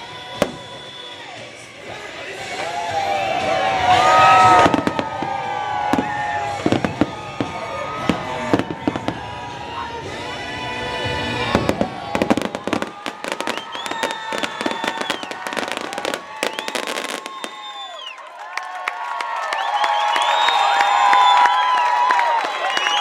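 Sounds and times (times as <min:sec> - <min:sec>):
fireworks bursting and crackling: 0:00.0 - 0:02.0, 0:03.4 - 0:18.1.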